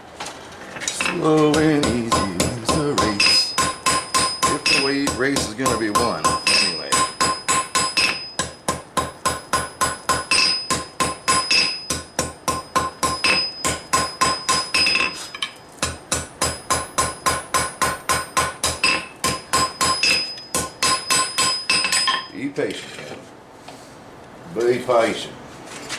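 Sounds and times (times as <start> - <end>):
hammer striking hot steel: 1.0 - 22.3
anvil ringing: 1.5 - 15.2, 16.1 - 22.3.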